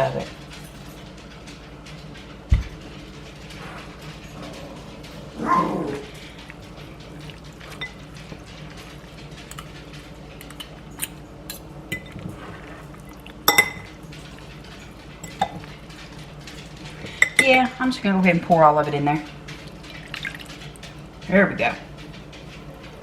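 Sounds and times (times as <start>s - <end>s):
dishes clinking: 6.0s - 17.8s.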